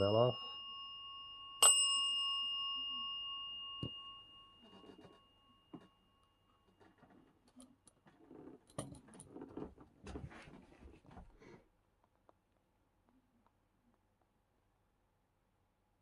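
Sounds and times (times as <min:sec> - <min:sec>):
bell ringing: 0:00.0 - 0:06.5
soft rustles: 0:06.7 - 0:11.7.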